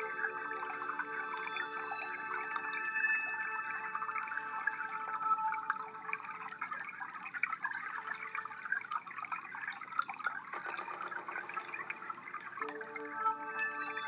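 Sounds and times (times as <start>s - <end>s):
ambient drone music: 0.0s - 7.0s, 11.6s - 14.0s
aquarium water bubbling: 0.0s - 14.0s.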